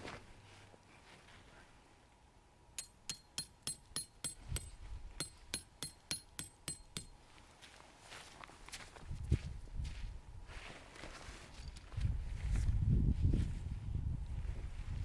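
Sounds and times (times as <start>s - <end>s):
hammer striking metal tent peg: 2.8s - 7.2s.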